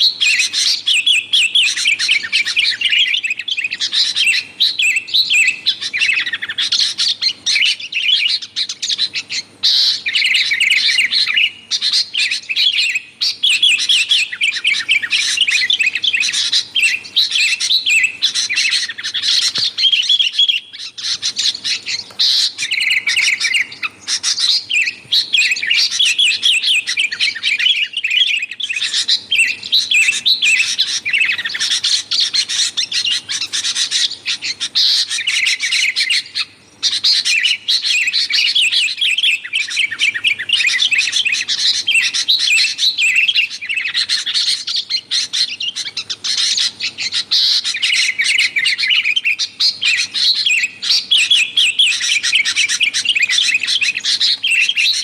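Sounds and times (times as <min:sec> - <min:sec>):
bulbuls chattering: 0:00.0 - 0:55.0.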